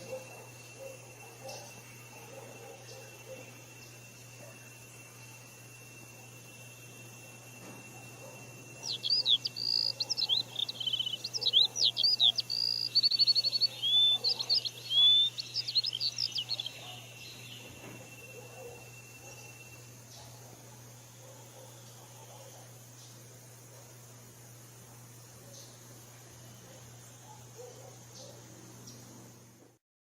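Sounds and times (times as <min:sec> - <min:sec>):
songbird singing varied song: 0:08.4 - 0:20.3.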